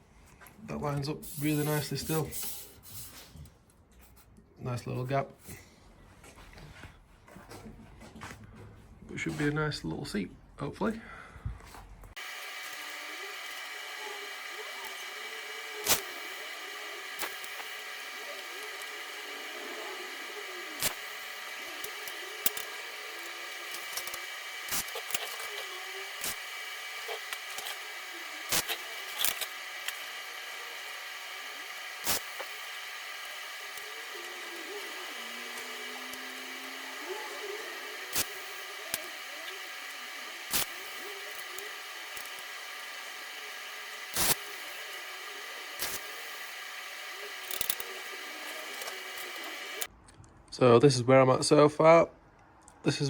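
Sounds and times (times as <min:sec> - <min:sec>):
mechanical hum and hiss: 0:01.0 - 0:03.4, 0:11.8 - 0:49.9.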